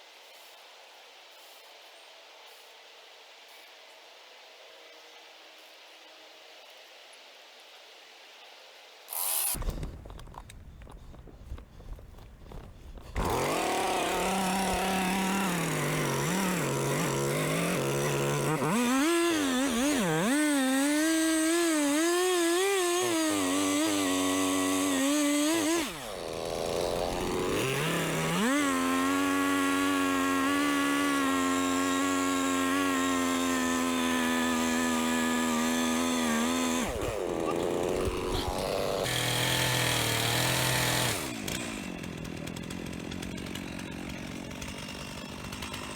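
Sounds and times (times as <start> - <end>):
chainsaw cutting wood: 9.1 - 45.9.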